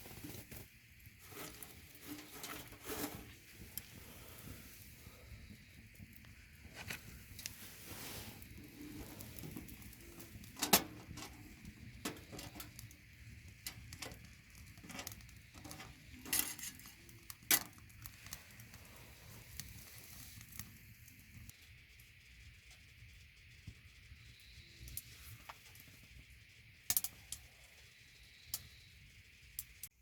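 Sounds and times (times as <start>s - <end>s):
food cooking hiss: 0.0s - 21.7s.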